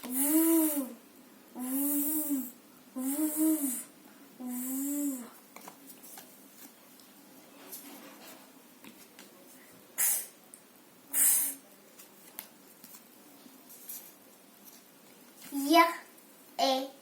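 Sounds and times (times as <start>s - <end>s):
woman making hissing sounds: 0.1s - 1.0s, 1.6s - 5.3s, 10.0s - 10.4s, 11.1s - 11.6s.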